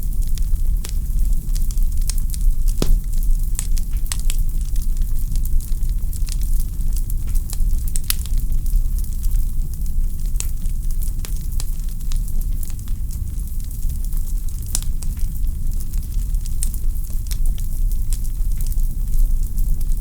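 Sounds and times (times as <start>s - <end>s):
wood fire crackling and popping: 2.8s - 4.2s.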